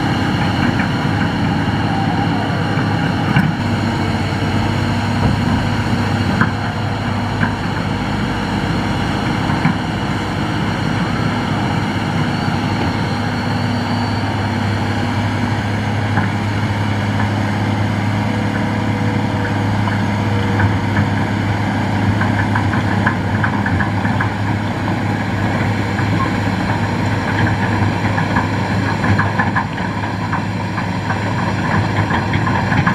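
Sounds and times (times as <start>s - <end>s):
excavator diesel engine running: 0.0s - 32.9s.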